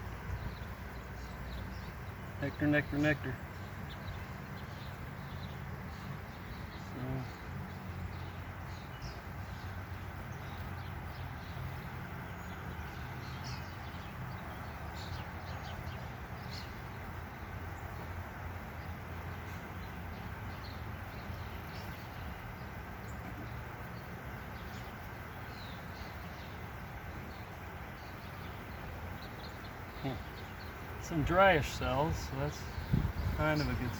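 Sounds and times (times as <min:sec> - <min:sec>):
honey bees buzzing: 0:28.3 - 0:33.9.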